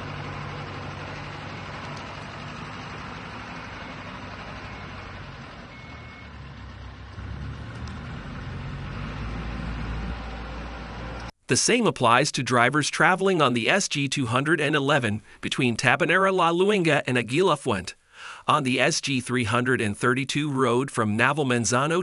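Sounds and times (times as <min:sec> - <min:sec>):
traffic noise: 0:00.0 - 0:11.3
vehicle engines humming: 0:00.0 - 0:11.4.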